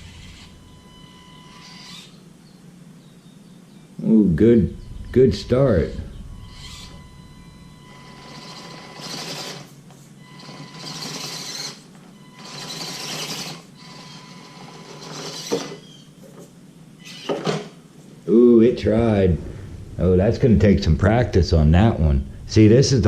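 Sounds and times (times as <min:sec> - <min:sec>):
small electric motor whirring: 0:00.0 - 0:02.2, 0:06.4 - 0:16.1.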